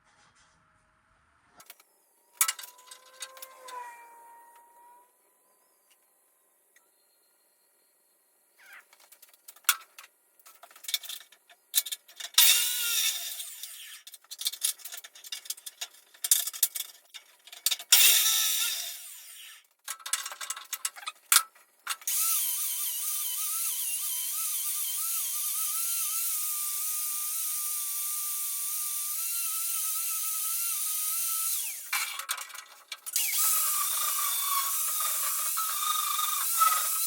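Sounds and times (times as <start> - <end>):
clicks and knocks of metal: 2.4 - 3.8, 8.9 - 18.3, 19.8 - 22.1, 31.9 - 37.0
power tool motor whining: 2.4 - 5.1, 12.4 - 14.1, 18.0 - 19.7, 22.0 - 37.0.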